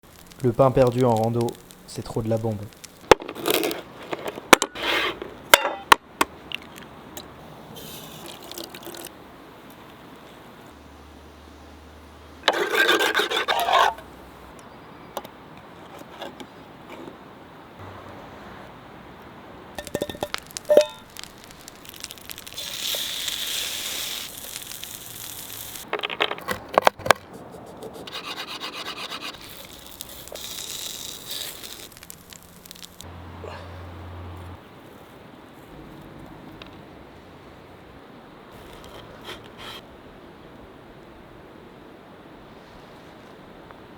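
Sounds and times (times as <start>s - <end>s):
bread knife sawing through bread: 12.5s - 13.9s, 28.0s - 29.4s
utensils scraping a metal pot: 12.5s - 14.1s
hiss: 19.9s - 25.9s, 28.1s - 34.1s.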